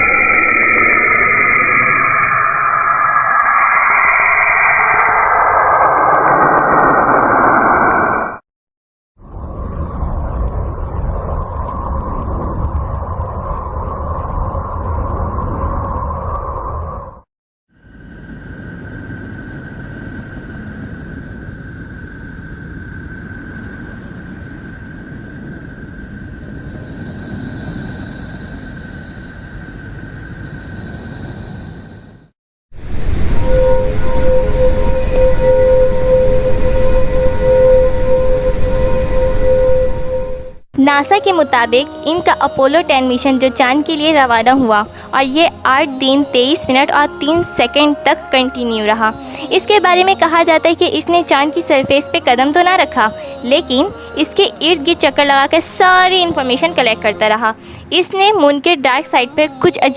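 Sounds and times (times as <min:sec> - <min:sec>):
low rumbling noise: 0:00.0 - 0:08.4, 0:09.2 - 0:17.2, 0:17.8 - 0:59.9
rushing radio-like hiss with whine: 0:00.0 - 0:08.4
whistle-like tone: 0:00.0 - 0:08.4, 0:32.9 - 0:45.6
faint high tone: 0:33.3 - 0:59.9.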